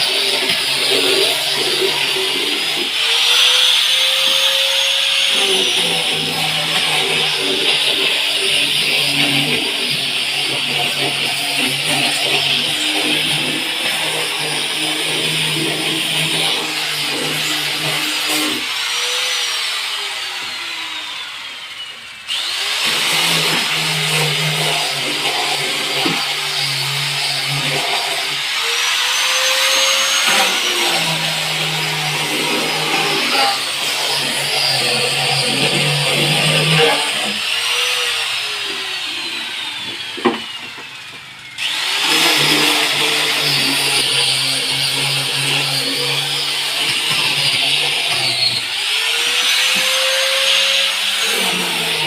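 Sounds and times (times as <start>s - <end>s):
sanding machine motor whine: 0.0s - 52.0s.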